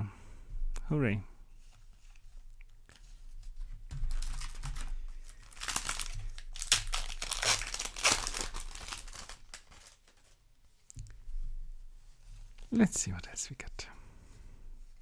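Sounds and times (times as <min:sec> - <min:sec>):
plastic wrapping crinkling: 0:03.9 - 0:10.4.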